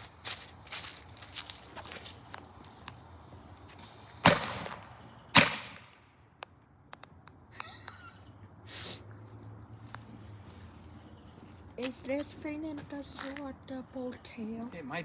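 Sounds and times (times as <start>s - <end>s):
firecrackers banging: 4.1s - 5.9s.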